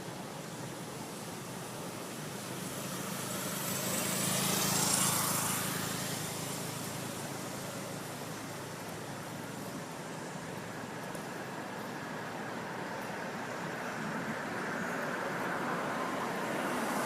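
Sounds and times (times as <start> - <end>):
vehicle passing by: 2.2 - 10.2, 13.3 - 17.0.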